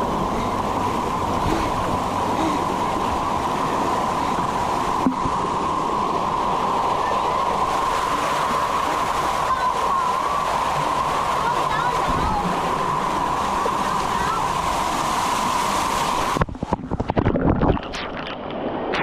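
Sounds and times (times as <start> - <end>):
running and splashing water: 0.0 - 19.0.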